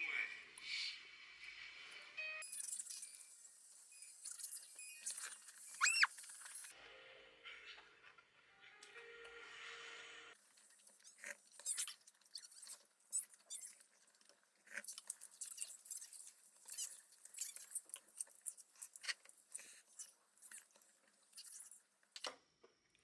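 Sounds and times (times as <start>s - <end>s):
music: 2.1s - 2.4s, 6.7s - 10.4s
chewing with wet clicks and crunches: 10.4s - 22.2s.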